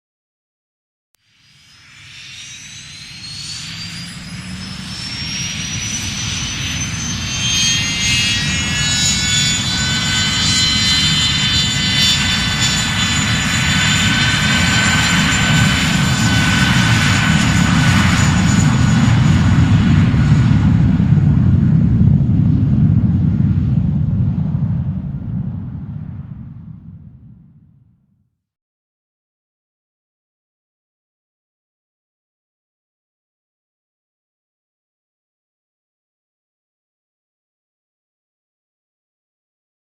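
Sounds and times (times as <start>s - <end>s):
high engine whine rising: 1.4s - 27.8s
deep engine rumble: 11.0s - 28.0s.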